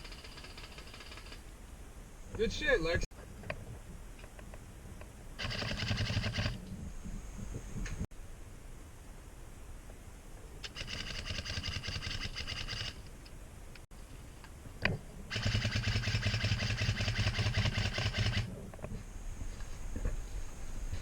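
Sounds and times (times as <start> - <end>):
airsoft gun firing bursts: 5.4 - 6.6, 10.6 - 13.0, 15.3 - 18.5.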